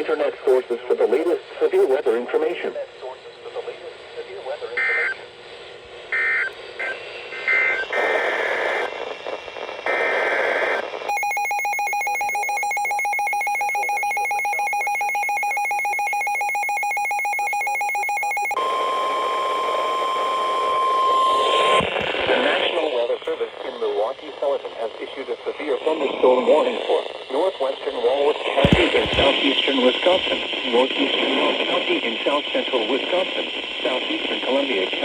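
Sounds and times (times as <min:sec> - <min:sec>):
steady warning tone: 0:09.9 - 0:21.8.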